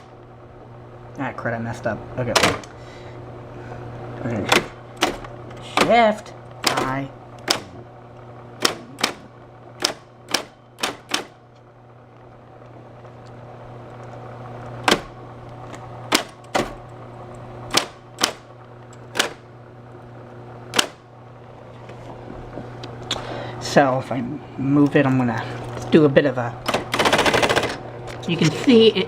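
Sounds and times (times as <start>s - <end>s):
typewriter motor and fan hum: 0.0s - 29.0s
typewriter key strikes: 8.6s - 11.3s.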